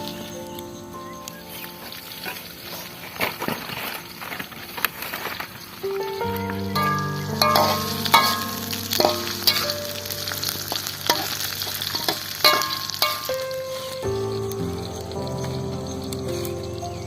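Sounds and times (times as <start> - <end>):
food sizzling in a pan: 5.9 - 17.0
utensil clacking against pan: 6.8 - 9.8, 10.8 - 13.5.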